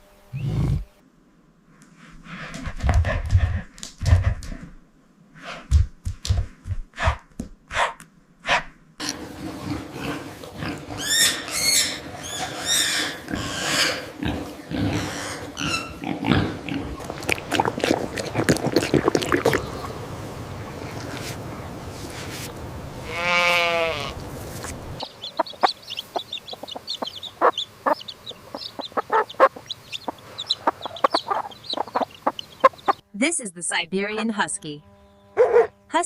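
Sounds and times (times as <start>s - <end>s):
pigs grunting and snorting: 0.3s - 0.9s, 8.5s - 20.0s
pigs squealing: 9.0s - 19.8s, 25.0s - 33.0s.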